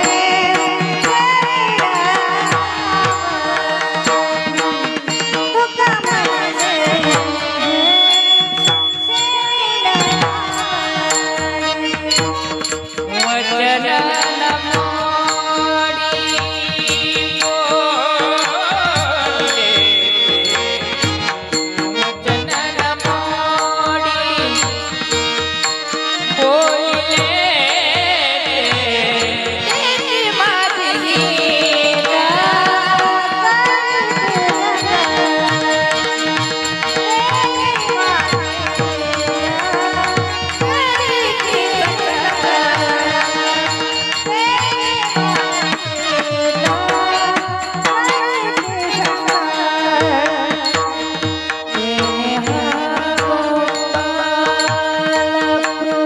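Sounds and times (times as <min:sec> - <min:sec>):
person singing ornamented melody: 0:00.0 - 0:56.0
tabla drumming: 0:00.0 - 0:56.0
steady held notes: 0:06.1 - 0:13.3, 0:18.8 - 0:22.5.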